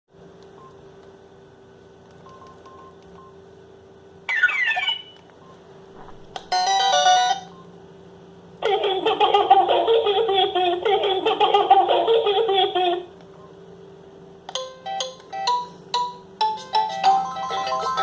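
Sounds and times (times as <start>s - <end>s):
faint steady hum: 0.2s - 18.0s
faint phone beeps: 2.2s - 3.4s
chord-like electronic ringtone: 4.3s - 5.2s, 6.5s - 7.5s, 14.5s - 18.0s.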